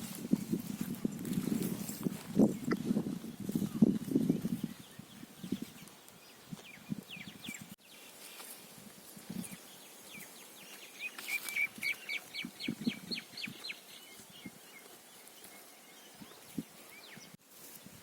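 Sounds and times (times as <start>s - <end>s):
steady outdoor hiss: 4.8s - 18.0s
bird chirping rapidly: 10.9s - 13.9s.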